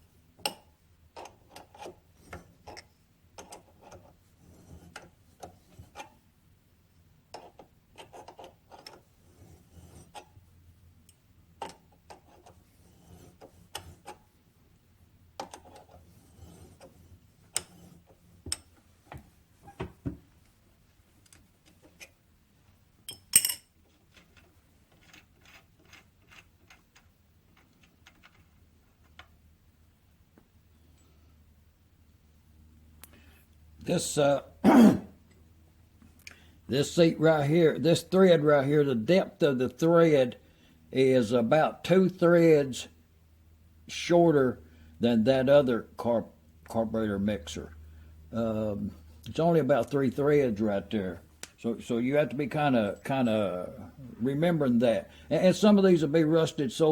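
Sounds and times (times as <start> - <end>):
metal parts and tools clinking: 23.1 - 28.6.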